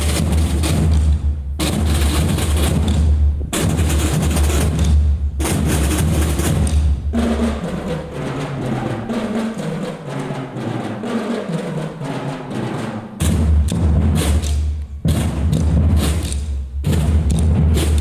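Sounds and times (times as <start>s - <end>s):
higher-pitched drums rhythm: 0.0s - 18.0s
marching drum band playing: 0.0s - 18.0s
bass drums pounding: 13.2s - 18.0s.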